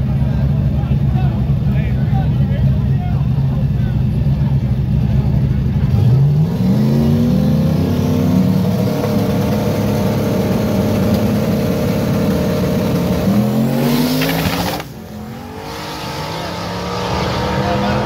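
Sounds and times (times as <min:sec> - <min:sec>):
car engine revving under acceleration: 0:05.7 - 0:18.0.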